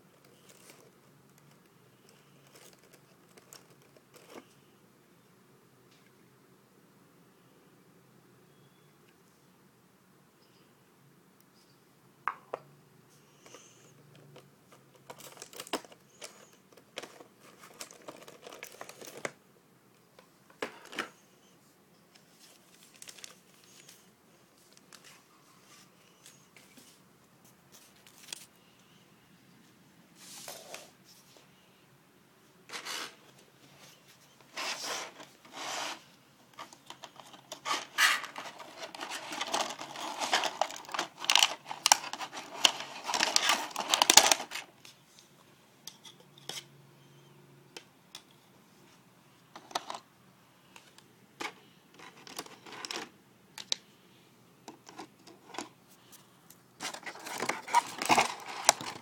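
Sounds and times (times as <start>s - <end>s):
packaging rustling: 0.2s - 4.5s, 14.9s - 19.4s, 22.4s - 25.2s, 34.4s - 44.7s, 56.8s - 59.0s.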